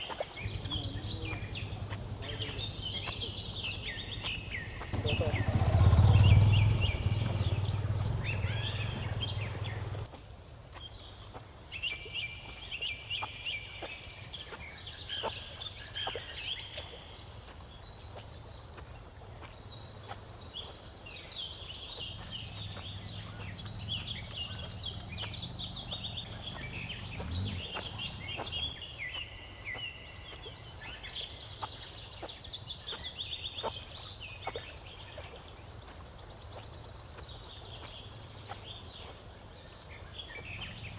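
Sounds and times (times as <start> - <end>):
birds chirping: 0.0 - 40.9
low rumble: 4.9 - 10.1.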